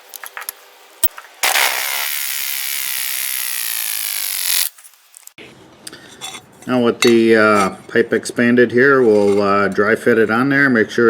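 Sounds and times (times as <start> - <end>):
power tool motor whirring: 1.4 - 4.8.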